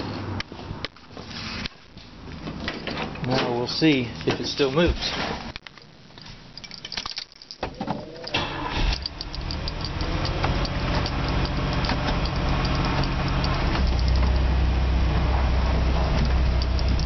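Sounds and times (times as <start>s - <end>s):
car engine starting and running: 7.8s - 17.0s
regular engine ticking: 8.4s - 17.0s.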